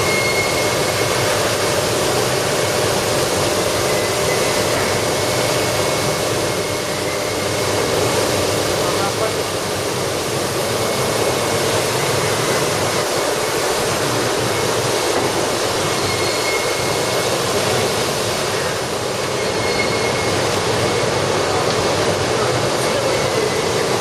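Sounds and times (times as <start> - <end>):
machine rumble and hiss: 0.0 - 24.0.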